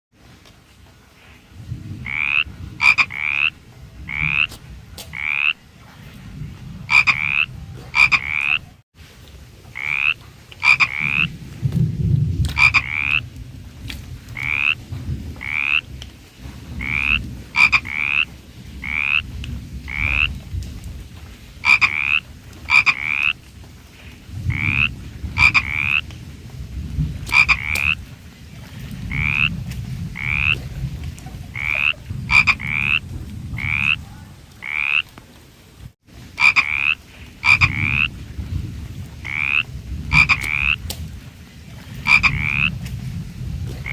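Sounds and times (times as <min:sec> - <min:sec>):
frog croaking: 0:02.0 - 0:05.6, 0:06.8 - 0:08.8, 0:09.7 - 0:11.4, 0:12.5 - 0:13.2, 0:14.4 - 0:14.8, 0:15.4 - 0:15.9, 0:16.8 - 0:20.4, 0:21.6 - 0:23.4, 0:24.5 - 0:26.1, 0:27.3 - 0:28.0, 0:29.1 - 0:30.7, 0:31.4 - 0:35.1, 0:36.4 - 0:38.2, 0:39.2 - 0:40.8, 0:41.9 - 0:42.8
low rumble: 0:23.3 - 0:34.6.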